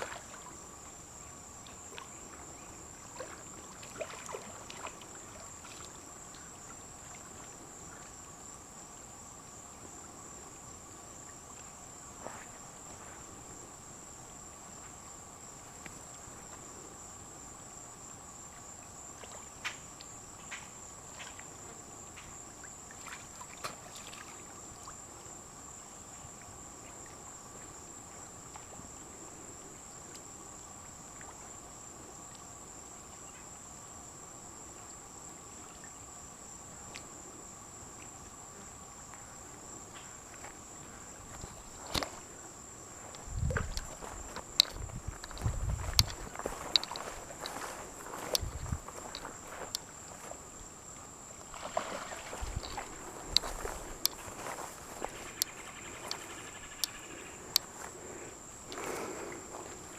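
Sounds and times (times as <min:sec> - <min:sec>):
crickets trilling: 0:00.0 - 0:59.9
soft clicks or light splashes: 0:01.6 - 0:02.2, 0:15.8 - 0:16.3, 0:19.2 - 0:21.5, 0:22.1 - 0:25.0, 0:28.4 - 0:28.8, 0:32.3 - 0:32.5, 0:36.9 - 0:37.1, 0:41.4 - 0:42.2, 0:43.1 - 0:50.2, 0:51.0 - 0:54.3.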